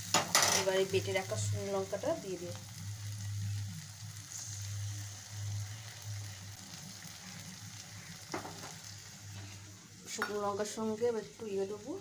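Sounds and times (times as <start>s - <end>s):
onion and tomato frying in oil: 0.0s - 12.0s.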